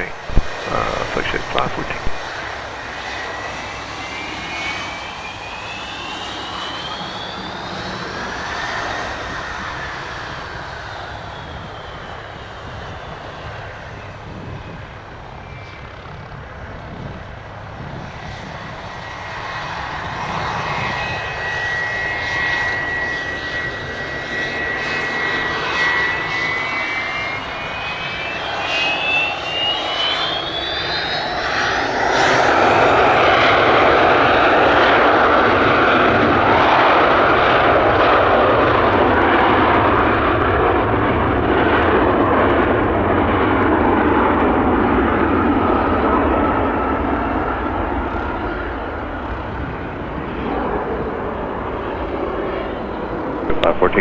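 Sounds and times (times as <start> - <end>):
loud rushing jet noise: 0.0 - 17.2, 53.2 - 54.0
jet engine whine: 0.0 - 54.0.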